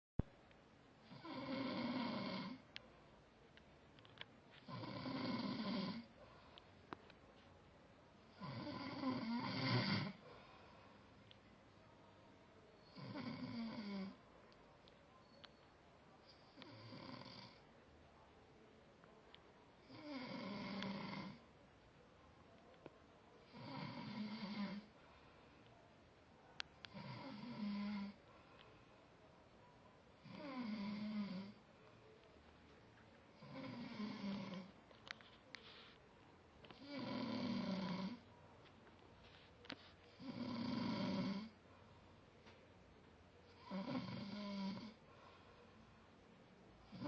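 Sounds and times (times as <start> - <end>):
man snoring: 1.1 - 2.6, 4.6 - 6.1, 8.4 - 10.2, 12.9 - 14.2, 16.5 - 17.6, 19.8 - 21.4, 23.5 - 24.9, 26.9 - 28.2, 30.3 - 31.6, 33.4 - 34.7, 36.8 - 38.2, 40.2 - 41.5, 43.6 - 45.0.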